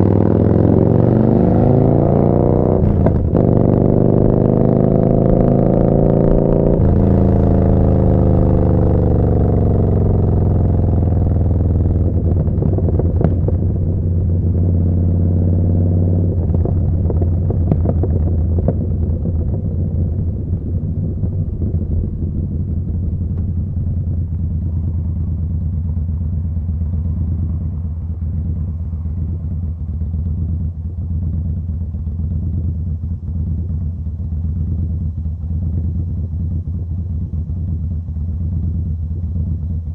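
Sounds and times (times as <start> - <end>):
motorcycle engine running: 0.0 - 39.9
gear change: 2.6 - 30.2.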